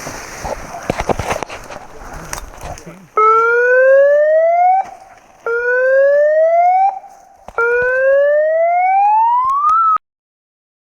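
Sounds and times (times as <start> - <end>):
siren rising wails: 3.2 - 10.0.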